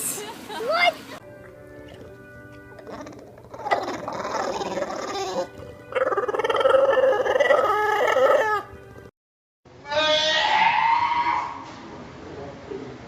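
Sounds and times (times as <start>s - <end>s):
faint background music: 0.1s - 9.1s
animal wavering cries: 2.8s - 8.8s, 9.8s - 11.7s.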